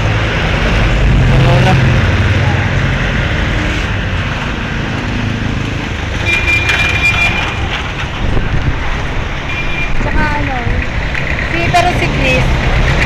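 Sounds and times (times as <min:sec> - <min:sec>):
vehicle engine and road rumble: 0:00.0 - 0:13.0.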